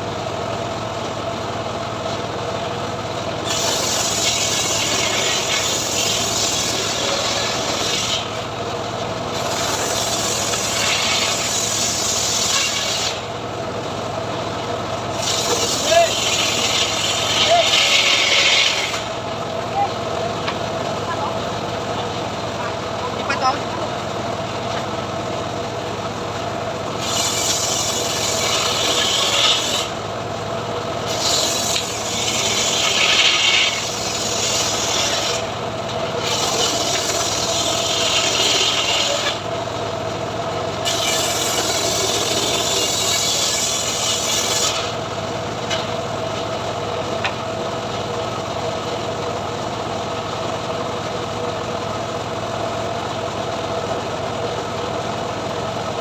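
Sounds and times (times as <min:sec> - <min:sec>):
sawmill engine hum: 0:00.0 - 0:56.0
saw blade rasping through wood: 0:03.4 - 0:13.4, 0:15.0 - 0:19.5, 0:26.7 - 0:30.2, 0:30.8 - 0:39.5, 0:40.6 - 0:46.0.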